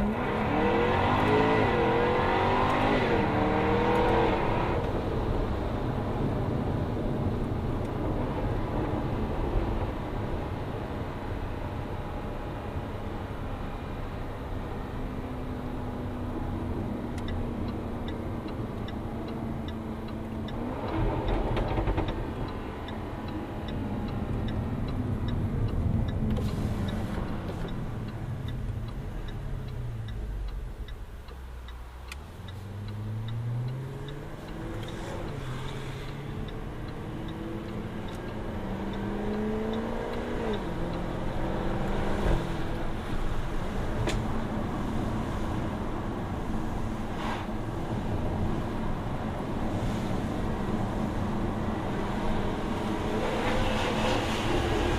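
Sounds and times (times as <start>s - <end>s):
car engine accelerating through gears: 0.0s - 6.1s, 14.5s - 54.9s.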